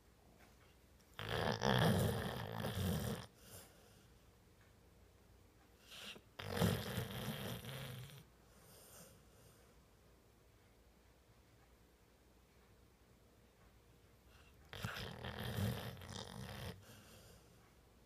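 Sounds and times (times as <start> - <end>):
dog snoring: 1.1 - 4.0, 5.8 - 9.6, 14.3 - 17.6.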